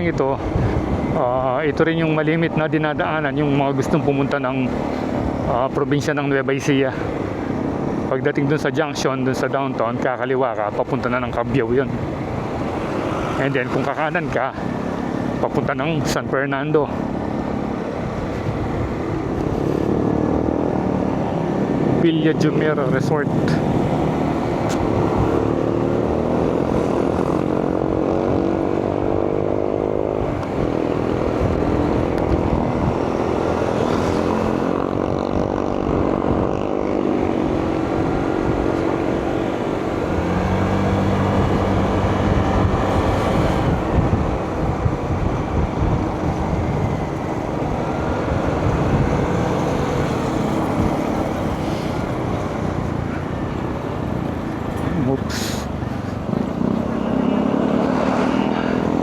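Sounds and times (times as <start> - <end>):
road and wind noise: 0.0 - 59.0
vehicle engine accelerating: 18.9 - 59.0.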